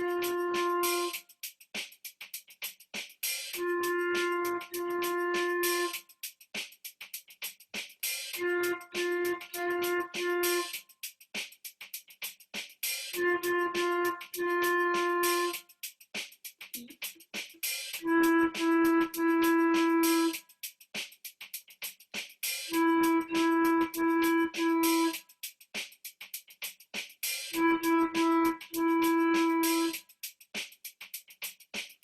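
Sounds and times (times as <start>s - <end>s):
flute phrases: 0.0s - 1.2s, 3.6s - 6.0s, 8.4s - 10.8s, 13.2s - 15.6s, 18.0s - 20.4s, 22.7s - 25.2s, 27.6s - 30.0s
drum loop ticking: 0.0s - 32.0s.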